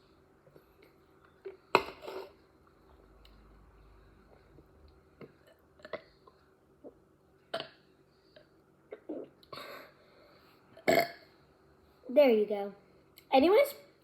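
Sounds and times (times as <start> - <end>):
girl gulping air: 8.9 - 9.9
small low burp: 10.8 - 11.3.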